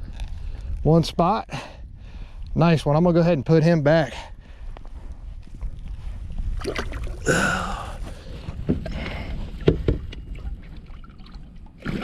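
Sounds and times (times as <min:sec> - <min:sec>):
water splashing: 0:06.5 - 0:07.7, 0:10.3 - 0:12.0
knocks against kayak hull: 0:09.6 - 0:10.2.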